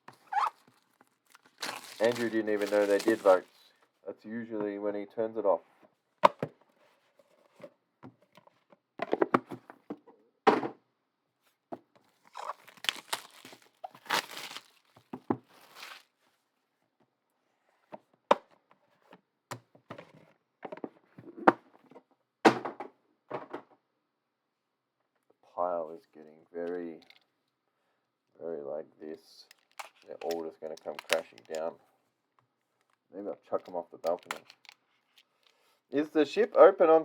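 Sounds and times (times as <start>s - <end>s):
wrappers crinkling and tearing: 0.2s - 3.6s, 12.3s - 16.1s, 29.5s - 31.6s, 34.0s - 34.8s.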